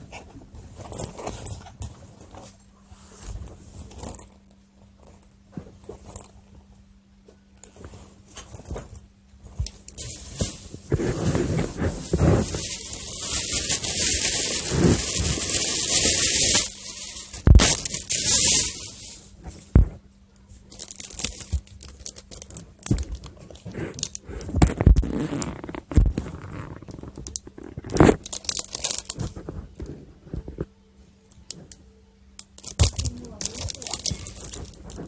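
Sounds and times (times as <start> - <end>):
faint steady hum: 0.0 - 35.0
plastic packaging rustling: 9.9 - 20.0, 20.6 - 24.2, 26.0 - 29.8, 32.6 - 35.0.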